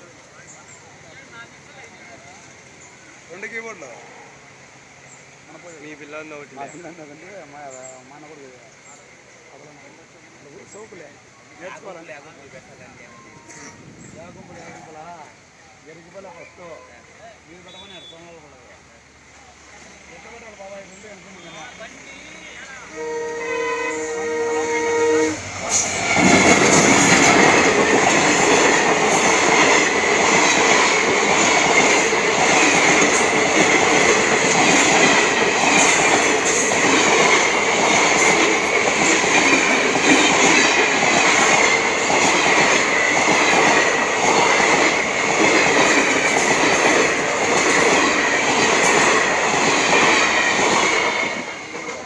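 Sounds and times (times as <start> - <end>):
train horn: 21.4 - 27.2
train wheels clattering over rails: 25.5 - 52.0.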